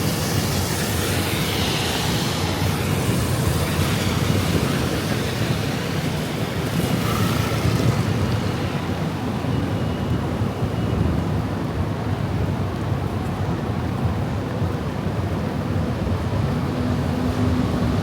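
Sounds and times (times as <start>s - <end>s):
heavy rain falling: 0.0s - 10.3s
city traffic: 0.0s - 18.0s.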